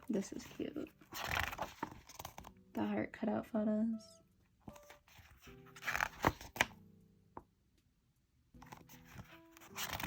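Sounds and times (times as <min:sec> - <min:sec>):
book pages turning: 0:00.0 - 0:02.6, 0:04.6 - 0:06.8, 0:08.6 - 0:10.0
faint music with held notes: 0:00.0 - 0:10.0.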